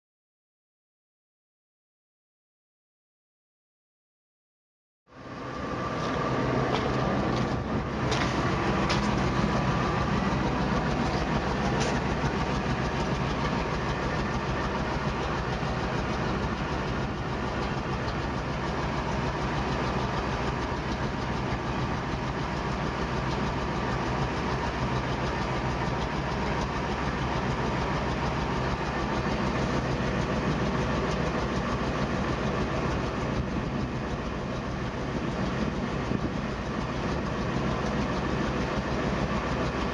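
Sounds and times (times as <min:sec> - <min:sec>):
truck engine idling: 0:05.1 - 0:39.9
exhaust leak puffing tick: 0:10.8 - 0:14.2.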